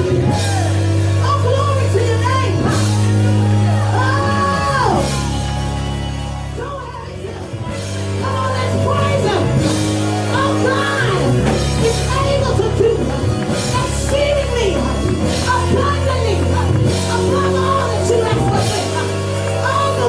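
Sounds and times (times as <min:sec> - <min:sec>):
gospel worship music with singing: 0:00.0 - 0:20.0.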